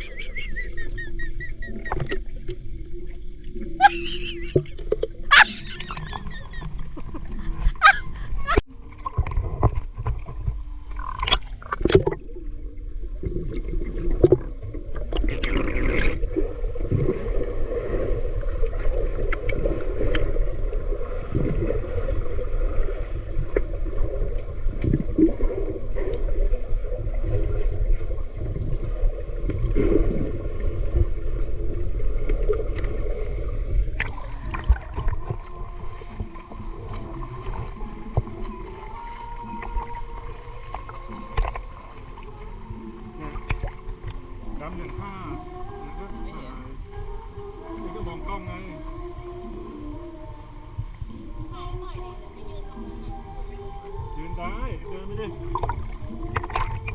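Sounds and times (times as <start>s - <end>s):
rushing gurgling pool water: 0.0s - 56.9s
water splashes and knocks: 8.9s - 12.4s, 13.1s - 26.4s, 27.1s - 45.4s, 55.2s - 56.9s.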